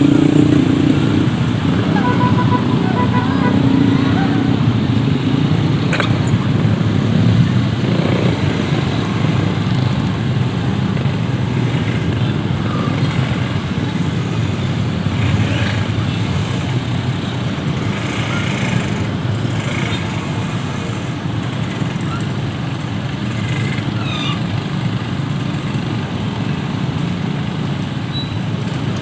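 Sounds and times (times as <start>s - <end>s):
motorcycle engines running: 0.0s - 29.0s
road traffic rumble: 0.0s - 29.0s.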